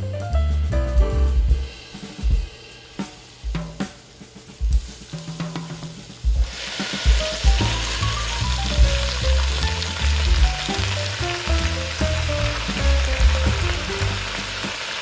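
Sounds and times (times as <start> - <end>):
food sizzling in a pan: 6.4 - 15.0.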